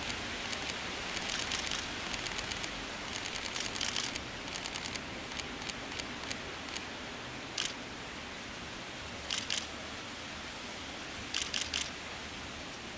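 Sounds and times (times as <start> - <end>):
camera shutter clicks: 0.0 - 6.8, 7.6 - 7.8, 9.3 - 9.7, 11.4 - 11.9.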